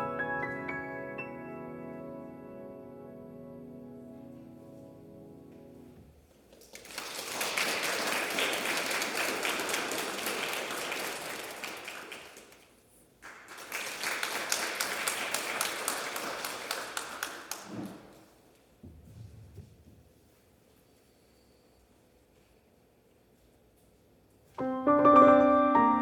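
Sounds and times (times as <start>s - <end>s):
audience clapping: 6.5s - 18.3s.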